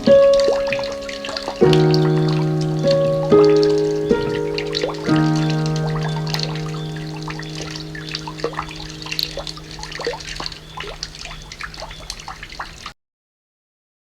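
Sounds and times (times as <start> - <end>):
held piano chord: 0.0 - 11.5
water dripping and trickling: 0.0 - 13.0.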